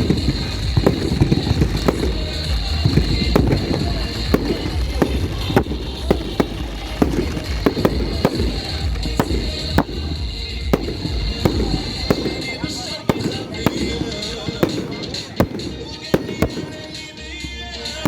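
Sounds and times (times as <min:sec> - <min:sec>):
fireworks bangs: 0:00.0 - 0:18.0.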